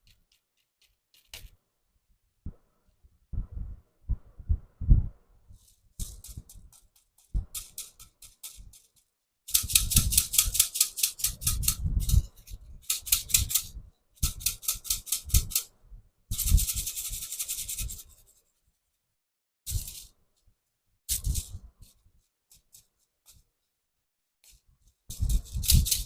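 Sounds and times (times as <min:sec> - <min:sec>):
toy rattling rasp: 0:06.0 - 0:15.7, 0:16.3 - 0:18.2, 0:19.7 - 0:20.1, 0:25.1 - 0:26.0.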